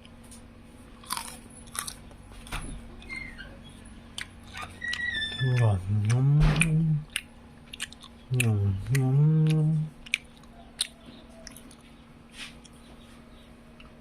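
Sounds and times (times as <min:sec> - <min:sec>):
person chewing crunchy food: 0:00.0 - 0:02.6, 0:04.0 - 0:12.9
person humming with mouth closed: 0:05.4 - 0:07.2, 0:08.3 - 0:10.0.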